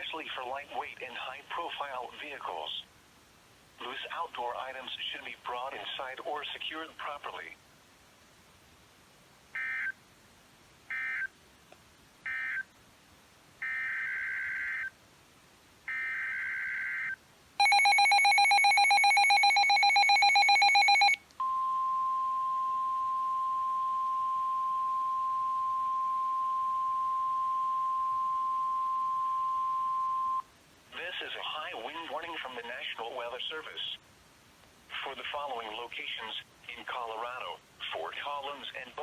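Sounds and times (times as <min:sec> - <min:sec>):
warbling two-tone attention signal: 0:17.6 - 0:30.4.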